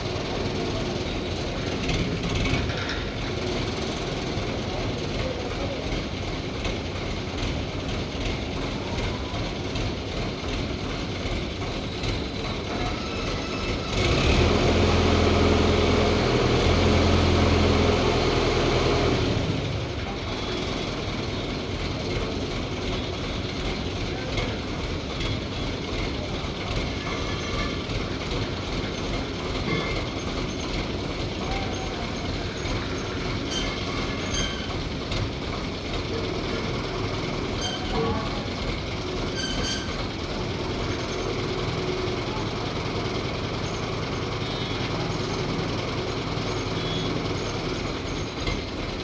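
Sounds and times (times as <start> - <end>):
diesel engine running: 0.0 - 49.0
short squeaks and clanks: 12.0 - 14.3, 26.8 - 28.1, 28.8 - 30.9, 31.7 - 34.9, 37.5 - 38.4, 39.2 - 40.2, 46.5 - 49.0.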